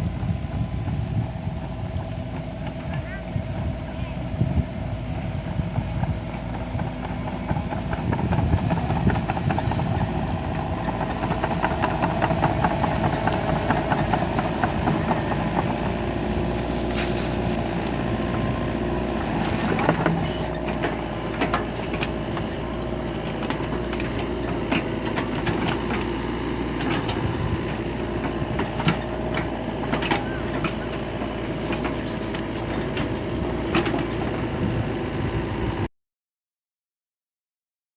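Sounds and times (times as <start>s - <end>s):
excavator engine drone: 0.0s - 35.9s.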